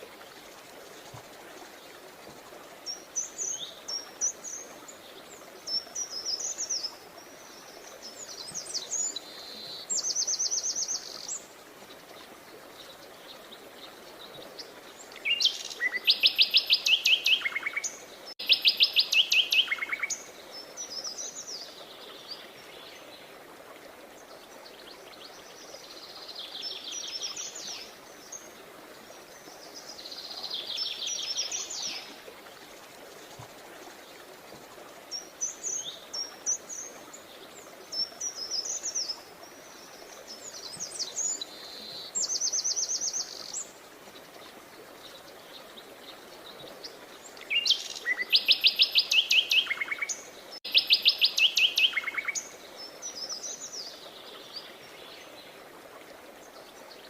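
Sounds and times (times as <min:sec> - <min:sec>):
faint steady hiss: 0:00.0 - 0:57.0
songbirds chirping: 0:00.0 - 0:57.0.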